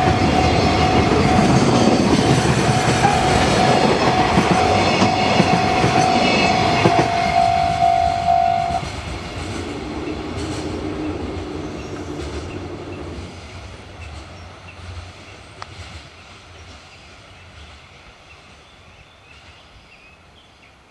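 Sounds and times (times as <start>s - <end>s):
steady high tone: 0.0s - 12.3s
wagons clacking over rail joints: 0.0s - 15.0s
freight train passing: 0.0s - 20.9s.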